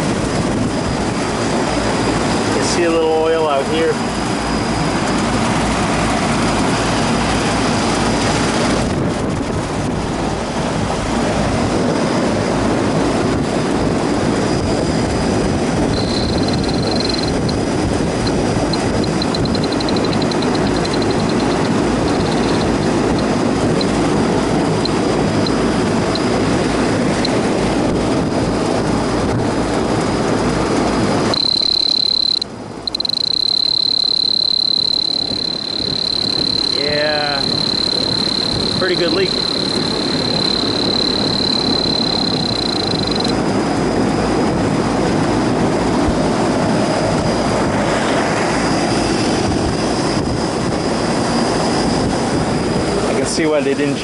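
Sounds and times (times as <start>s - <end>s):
air conditioner fan running: 0.0s - 54.0s
faint high chirps: 16.0s - 17.6s, 18.7s - 22.8s, 31.3s - 43.3s
high insect buzz: 16.0s - 17.6s, 18.2s - 22.8s, 31.3s - 43.3s.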